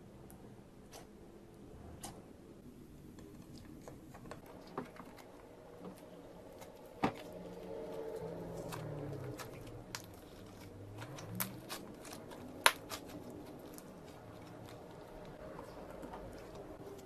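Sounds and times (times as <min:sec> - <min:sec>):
faint low hum: 0:00.0 - 0:17.0.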